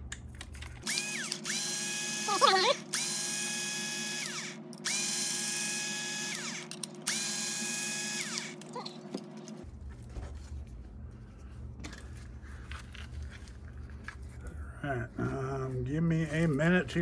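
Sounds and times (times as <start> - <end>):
low steady hum: 0.0 - 17.0
power driver motor whine: 0.8 - 8.7.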